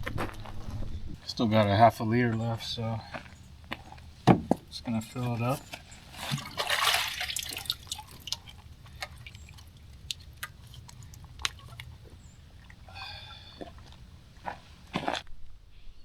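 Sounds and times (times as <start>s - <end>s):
water pouring into bottle: 6.2s - 12.0s
water drips: 6.2s - 14.1s.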